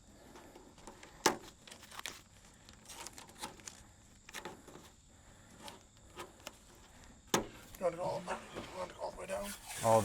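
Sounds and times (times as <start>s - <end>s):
tape crinkling: 1.6s - 4.4s.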